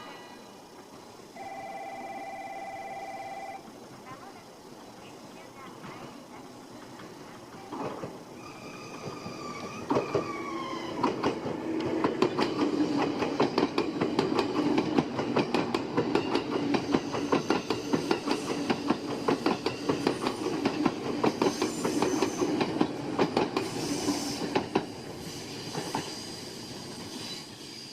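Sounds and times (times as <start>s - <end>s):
train rumble: 0.0s - 27.9s
train wheels clattering: 5.6s - 27.9s.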